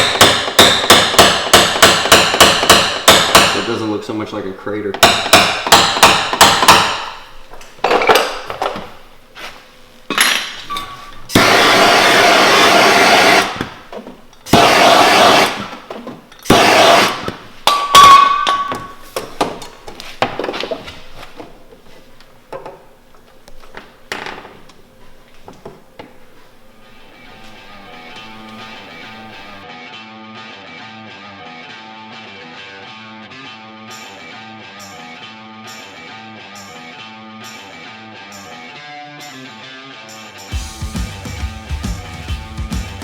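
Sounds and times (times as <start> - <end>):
loud hiss-like noise: 11.3 - 13.8, 14.5 - 15.8, 16.5 - 17.4.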